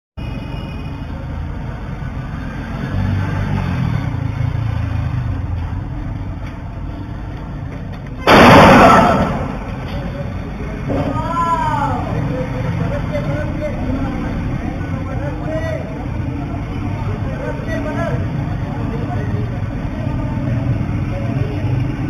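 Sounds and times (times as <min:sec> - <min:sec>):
street traffic: 0:00.2 - 0:22.0
loud gunshot: 0:08.3 - 0:09.7.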